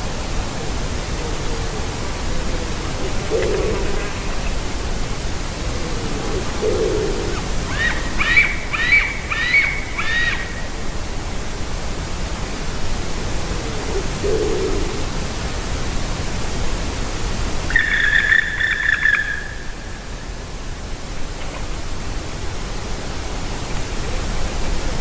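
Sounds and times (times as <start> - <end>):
bird calls: 1.3 - 10.8, 17.7 - 20.2.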